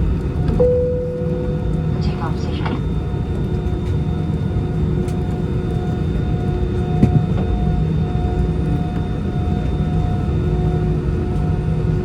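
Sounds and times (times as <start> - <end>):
jet engines rumbling: 0.0 - 11.2
steady tones: 0.6 - 2.8.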